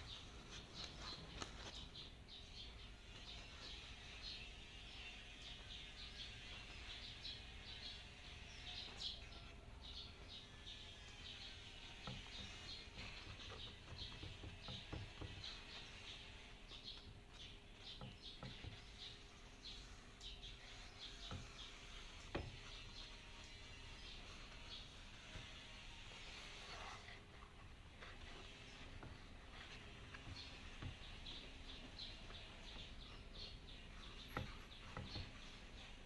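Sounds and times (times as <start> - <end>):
small birds chirping: 0.0 - 36.0.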